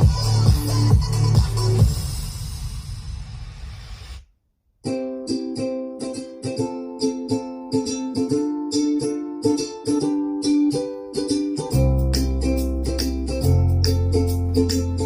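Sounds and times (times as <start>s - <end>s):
plucked string music: 0.0s - 1.8s, 4.8s - 15.0s.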